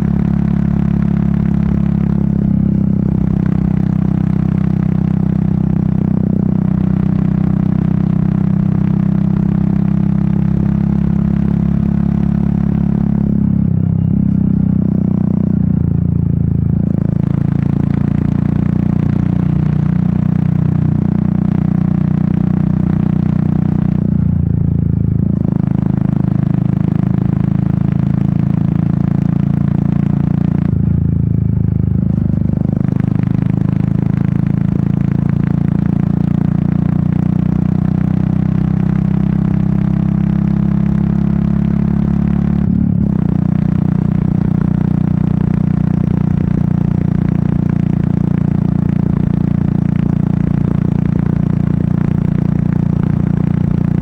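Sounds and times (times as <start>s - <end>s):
motorcycle engine running: 0.0s - 54.0s.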